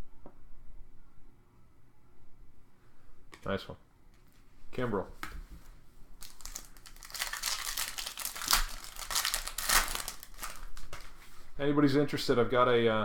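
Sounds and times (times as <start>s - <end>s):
wrapper crinkling: 6.2s - 11.4s.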